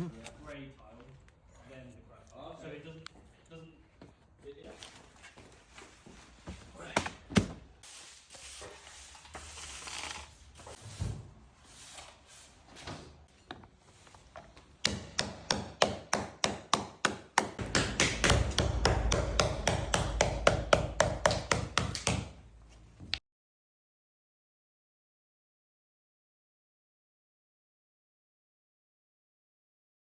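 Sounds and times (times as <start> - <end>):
plastic floor tiles knocking: 14.9 - 22.4
low rumble: 17.6 - 21.5.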